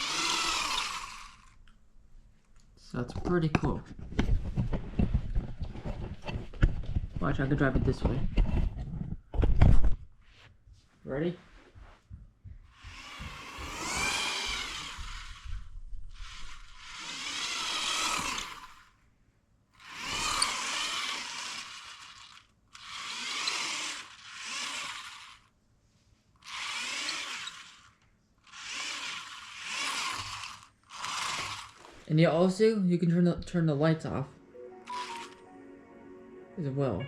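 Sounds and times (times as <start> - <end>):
toy car motor whining: 0.0 - 1.6, 12.7 - 19.0, 19.8 - 25.5, 26.4 - 32.1, 34.9 - 35.4.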